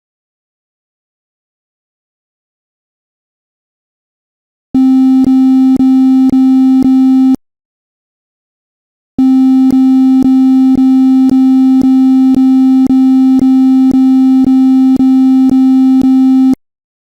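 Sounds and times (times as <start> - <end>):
buzzy electronic alarm beep: 4.8 - 7.4, 9.2 - 16.6.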